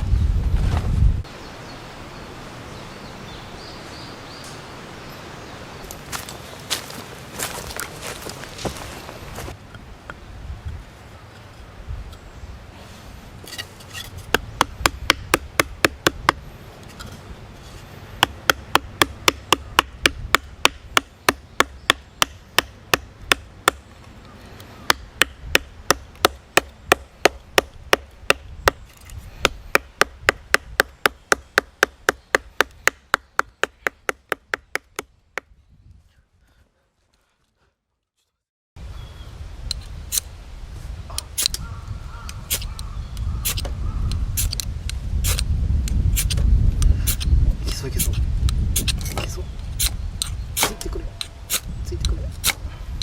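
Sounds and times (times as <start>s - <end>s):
blade chopping firewood: 13.4s - 16.4s, 18.2s - 23.9s, 24.9s - 35.5s, 48.0s - 51.7s.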